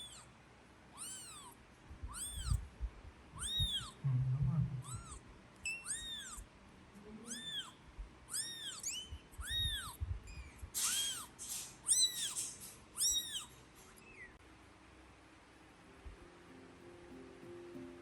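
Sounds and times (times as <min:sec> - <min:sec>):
kitten mewing: 0:00.0 - 0:00.3, 0:00.9 - 0:02.6, 0:03.4 - 0:06.5, 0:07.2 - 0:10.1, 0:10.8 - 0:13.6.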